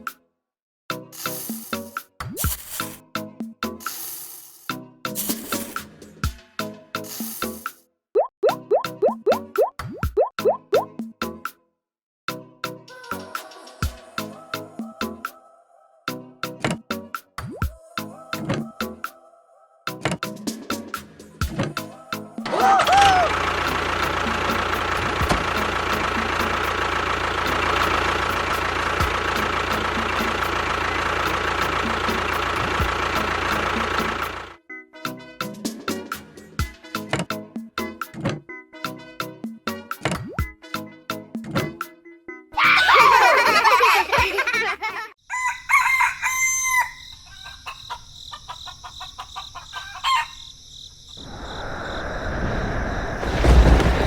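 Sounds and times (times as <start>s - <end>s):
rooster crowing: 22.0s - 23.4s, 45.2s - 50.6s
chicken clucking: 45.4s - 50.5s
steady rushing noise: 51.2s - 54.0s.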